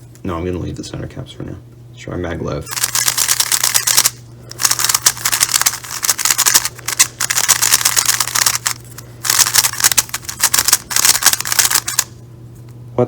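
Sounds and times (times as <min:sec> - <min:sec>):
speed cube clicking turns: 0:02.7 - 0:12.2.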